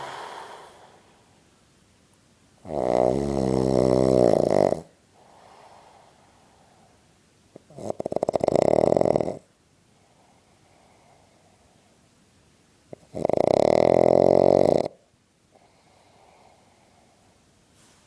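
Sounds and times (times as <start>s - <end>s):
soft breath: 0.0s - 1.4s, 5.2s - 7.0s, 15.5s - 18.0s
loud snoring: 2.6s - 4.9s, 7.7s - 9.5s, 13.0s - 15.0s.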